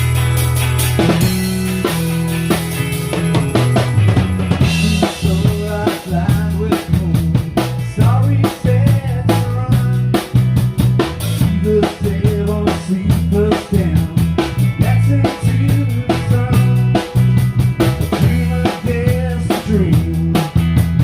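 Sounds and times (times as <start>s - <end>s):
amplified instruments: 0.0s - 8.5s
bass guitar: 0.0s - 21.0s
drum kit beat: 0.0s - 21.0s.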